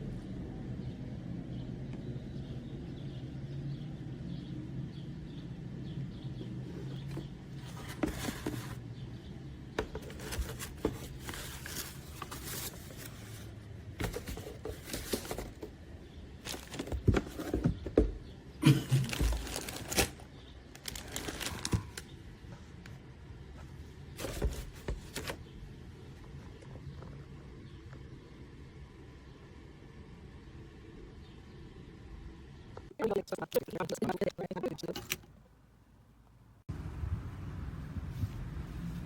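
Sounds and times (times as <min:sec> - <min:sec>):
rustling of objects handled: 0:06.9 - 0:08.9, 0:09.8 - 0:15.8, 0:16.4 - 0:18.0, 0:18.9 - 0:22.8, 0:23.5 - 0:25.5.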